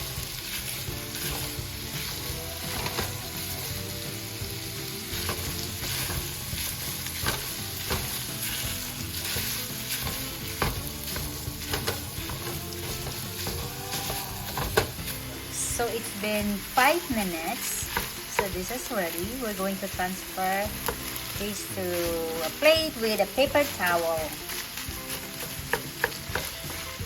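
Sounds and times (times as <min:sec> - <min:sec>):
sausage sizzling in a pan: 0:00.0 - 0:27.0
utensil scraping and clacking: 0:05.2 - 0:15.0.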